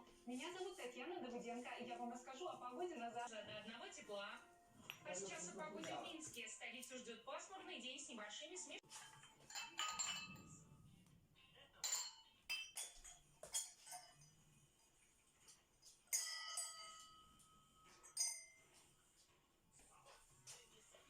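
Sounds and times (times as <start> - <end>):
glass and ceramic tableware clinking: 4.8 - 5.1, 8.9 - 10.8, 11.8 - 14.3, 16.1 - 18.8.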